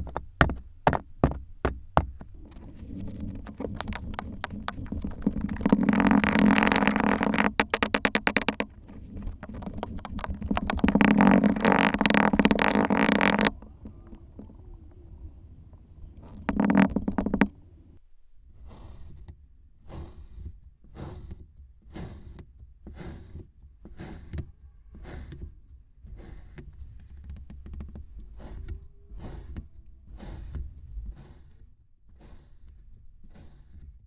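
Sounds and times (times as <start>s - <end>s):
slime squelching by hand: 2.4s - 14.7s.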